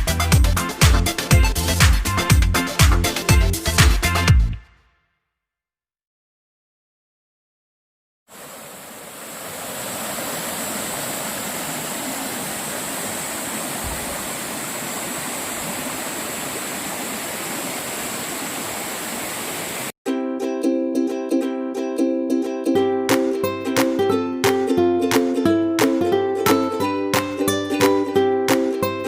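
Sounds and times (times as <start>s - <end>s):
stream water rushing: 8.3s - 19.9s.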